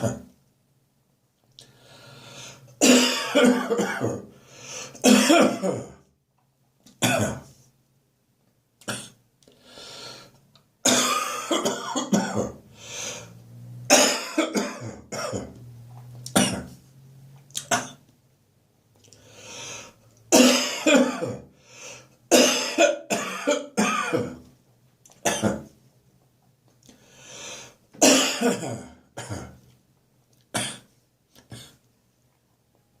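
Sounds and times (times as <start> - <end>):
person coughing: 0.0 - 0.3, 2.8 - 4.3, 4.9 - 6.0, 7.0 - 7.6, 10.8 - 12.6, 13.9 - 15.6, 16.3 - 16.8, 17.6 - 18.0, 20.3 - 21.5, 22.3 - 24.4, 25.2 - 25.7, 28.0 - 29.6, 30.6 - 31.8.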